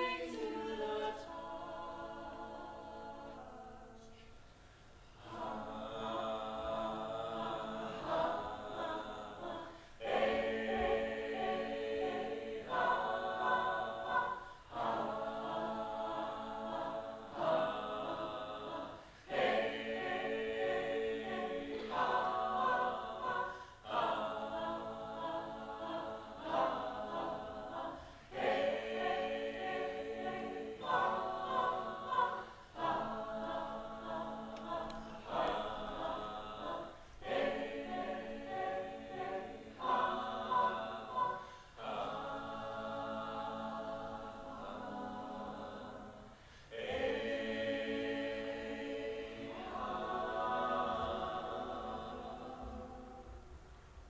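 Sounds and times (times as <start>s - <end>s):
choir singing unaccompanied: 0.0s - 4.3s, 5.1s - 54.0s.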